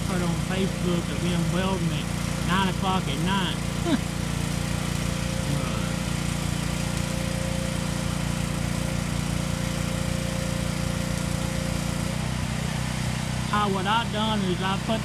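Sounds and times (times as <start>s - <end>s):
small engine running: 0.0s - 15.0s.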